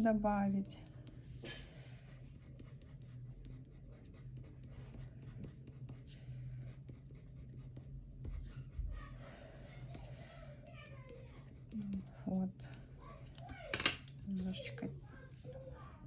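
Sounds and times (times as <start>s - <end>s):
low steady hum: 0.0s - 16.0s
pencil scratching on paper: 0.8s - 1.4s, 2.0s - 13.3s.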